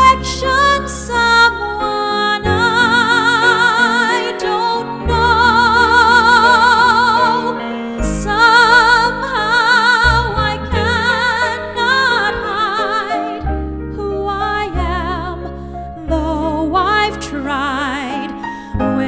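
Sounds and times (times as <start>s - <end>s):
operatic high voice singing: 0.0s - 19.0s
sustained low chords: 2.5s - 18.1s.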